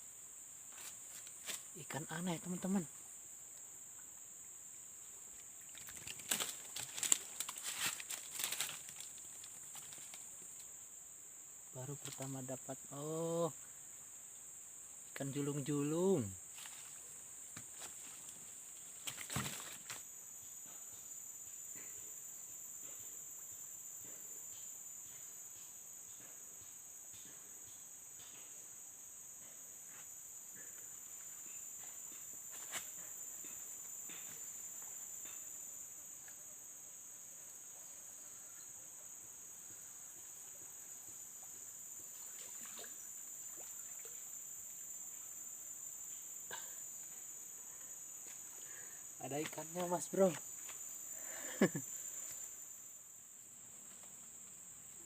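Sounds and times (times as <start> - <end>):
insects droning: 0.0 - 55.0.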